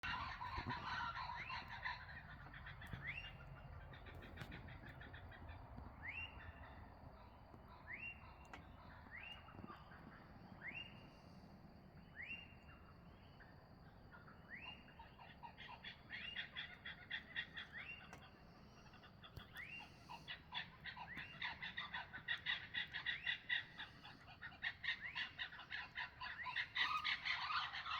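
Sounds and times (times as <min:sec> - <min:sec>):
rapid clicking bird chatter: 0:00.0 - 0:10.1, 0:15.5 - 0:27.9.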